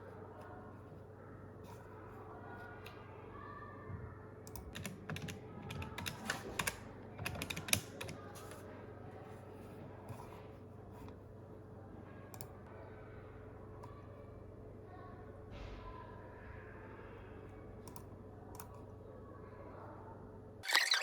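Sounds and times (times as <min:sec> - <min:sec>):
typing on computer keyboard: 0:04.5 - 0:08.6.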